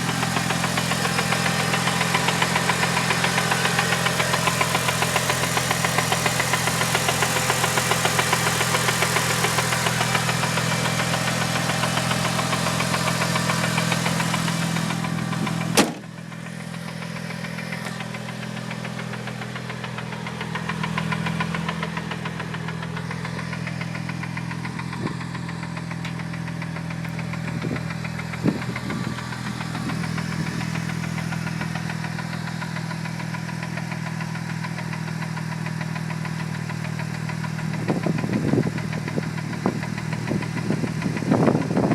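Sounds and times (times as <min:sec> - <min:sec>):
car engine idling with knocking: 0:00.0 - 0:41.9.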